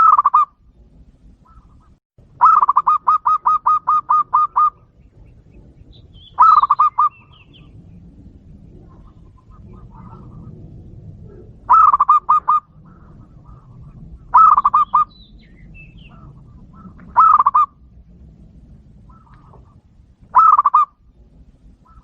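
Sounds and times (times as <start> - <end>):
dove cooing: 0.0 - 0.6, 1.4 - 22.0
bird chirps: 1.4 - 10.5, 11.2 - 17.7, 19.1 - 21.0.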